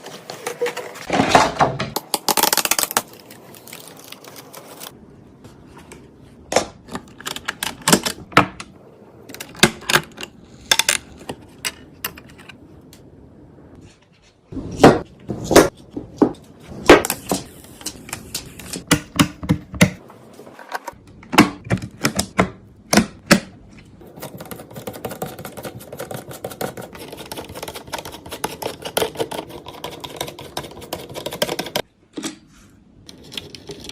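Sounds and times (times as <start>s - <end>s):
computer parts clicking and knocking: 6.5s - 12.6s, 16.1s - 20.0s, 20.9s - 32.4s.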